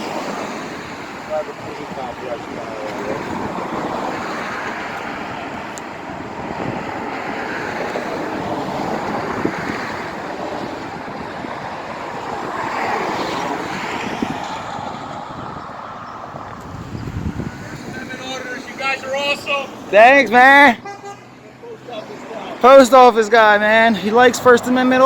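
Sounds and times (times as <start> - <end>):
wind rushing on microphone: 0.0 - 19.8
traffic: 0.0 - 25.0.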